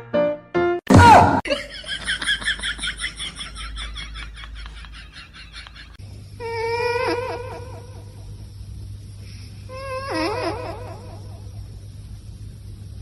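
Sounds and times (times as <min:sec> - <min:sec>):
animal wavering whine: 0:06.4 - 0:08.2, 0:09.7 - 0:11.6.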